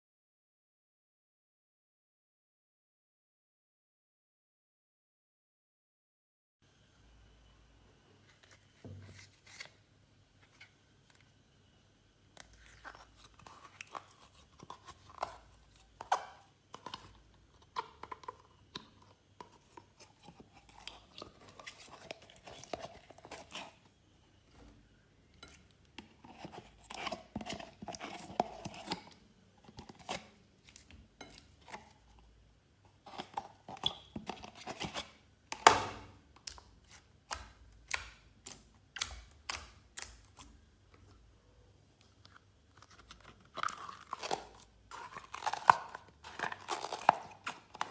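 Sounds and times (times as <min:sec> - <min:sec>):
slime squishing with sticky pops: 0:35.6 - 0:40.6.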